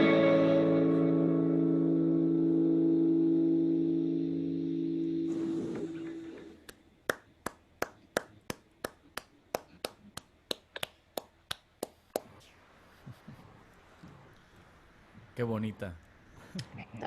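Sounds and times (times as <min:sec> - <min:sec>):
music chord: 0:00.0 - 0:05.3.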